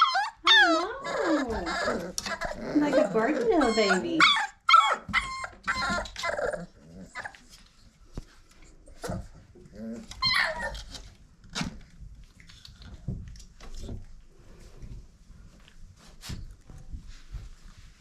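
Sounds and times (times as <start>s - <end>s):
puppies barking and yipping: 0.0s - 7.5s, 10.1s - 11.0s.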